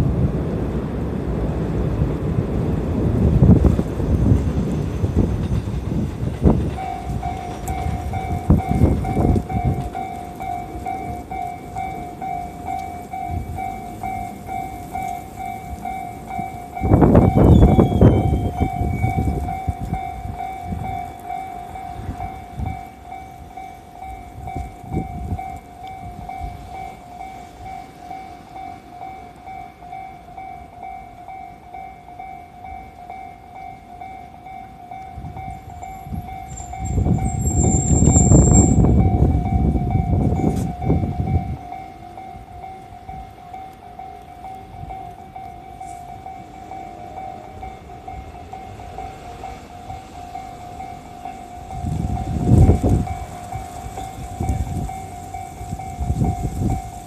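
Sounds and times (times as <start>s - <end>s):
train wheels rumbling on rails: 0.0s - 57.0s
level-crossing alarm ringing: 4.7s - 57.0s
thin high squeal: 17.4s - 19.3s, 36.5s - 38.9s.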